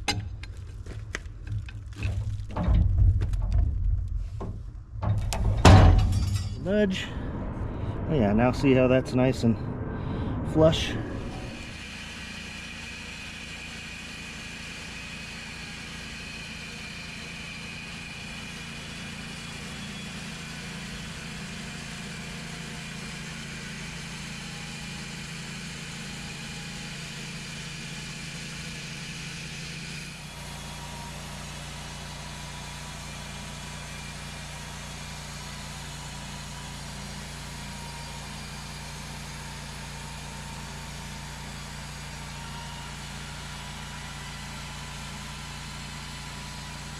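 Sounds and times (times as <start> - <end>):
sawmill engine running: 4.2 - 46.9.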